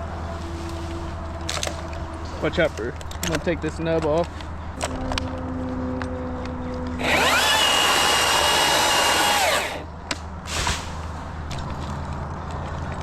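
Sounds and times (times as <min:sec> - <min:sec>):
chainsaw cutting branch: 0:07.0 - 0:09.8.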